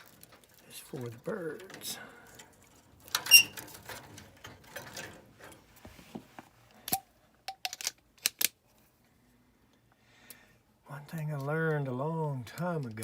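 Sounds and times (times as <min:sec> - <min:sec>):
clicks and rattles of wiring connectors: 0:00.0 - 0:05.8, 0:06.7 - 0:08.6, 0:11.1 - 0:13.0
short squeaks: 0:03.2 - 0:03.7.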